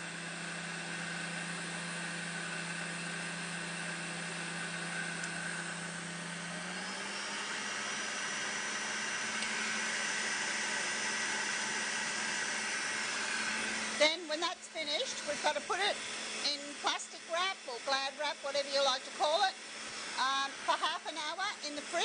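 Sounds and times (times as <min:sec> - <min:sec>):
electric mixer motor humming: 0:00.0 - 0:22.0.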